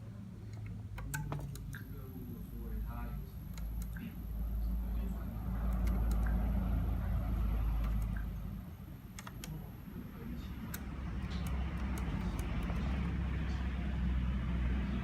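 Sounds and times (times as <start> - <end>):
sharp clicks: 0.5 - 1.9, 5.6 - 6.4, 7.8 - 8.3, 9.1 - 9.7, 10.6 - 12.8.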